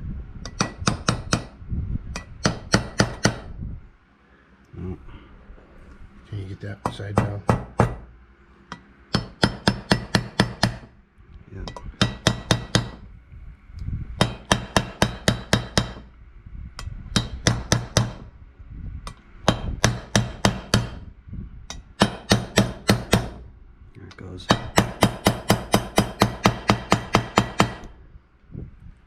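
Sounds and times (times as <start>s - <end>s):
hammer tapping metal: 0.4s - 1.5s, 2.2s - 3.5s, 6.8s - 8.1s, 8.7s - 10.9s, 11.7s - 13.0s, 14.2s - 16.1s, 16.8s - 18.2s, 19.1s - 21.0s, 21.7s - 23.4s, 24.1s - 27.9s.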